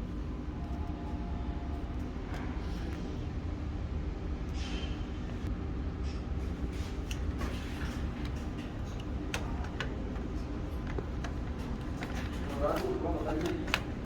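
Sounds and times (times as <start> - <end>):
photocopier humming: 7.0 - 14.0
photocopier clicks and ticks: 8.8 - 14.0.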